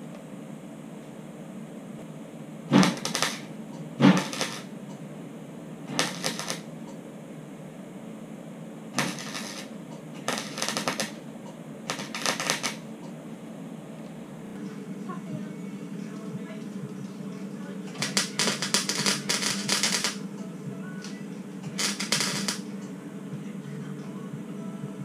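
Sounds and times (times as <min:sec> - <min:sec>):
steady low hum: 0:00.0 - 0:25.0
welder crackling bursts: 0:02.7 - 0:04.8, 0:05.8 - 0:06.7, 0:09.0 - 0:11.3, 0:11.9 - 0:13.0, 0:17.9 - 0:20.2, 0:21.6 - 0:22.7.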